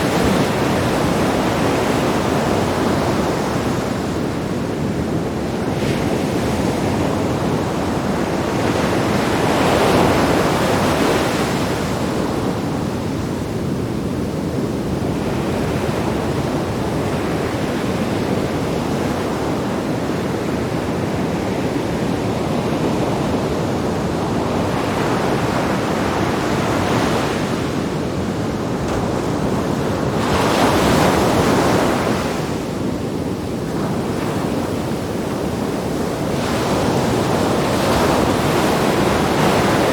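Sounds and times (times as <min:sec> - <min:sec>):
wind on microphone: 0:00.0 - 0:39.9.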